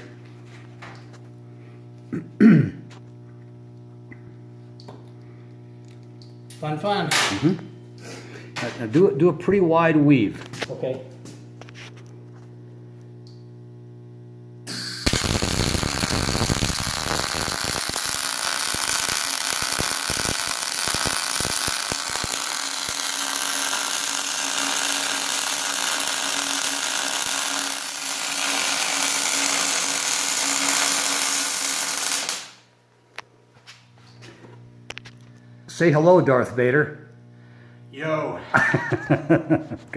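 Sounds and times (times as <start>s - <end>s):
arc welder humming: 0.0s - 39.2s
welding arc crackling hiss: 14.7s - 32.7s.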